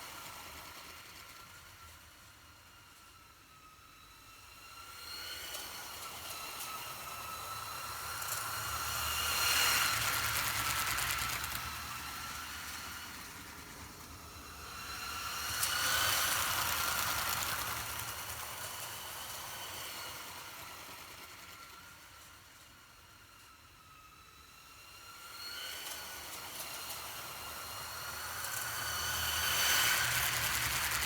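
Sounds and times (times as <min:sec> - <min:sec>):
toy train wheels clicking: 0:08.2 - 0:22.6, 0:25.8 - 0:31.0.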